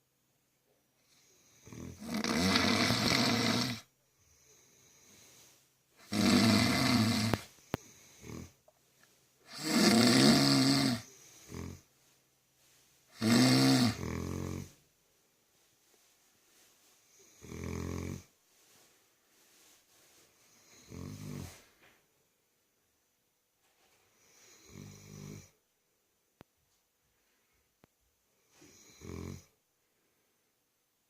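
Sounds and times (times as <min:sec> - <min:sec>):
bear cub snoring: 0:01.4 - 0:03.9, 0:06.0 - 0:08.6, 0:09.5 - 0:11.9, 0:13.1 - 0:14.8, 0:17.2 - 0:18.3, 0:20.6 - 0:21.6, 0:28.5 - 0:29.5
faint breaths: 0:03.3 - 0:09.8, 0:10.6 - 0:13.2, 0:15.5 - 0:22.1, 0:27.0 - 0:30.6.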